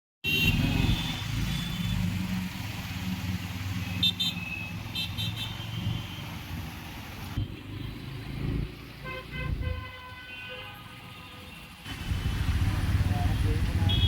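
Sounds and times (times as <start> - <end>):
vehicle engines humming: 0.3 - 9.9.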